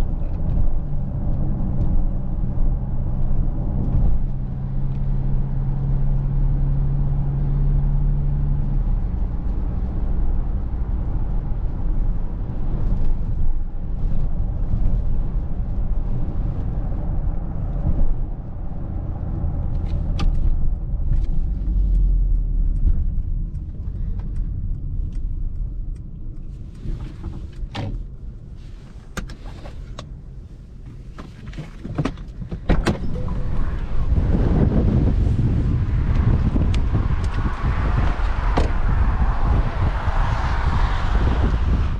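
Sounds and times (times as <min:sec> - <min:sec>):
car cabin road drone: 0:00.0 - 0:41.9.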